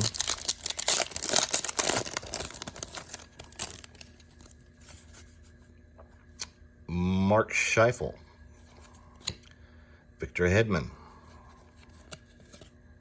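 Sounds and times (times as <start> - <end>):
foil wrapper tearing and crinkling: 0.0 - 4.6
cards being handled: 11.6 - 12.8.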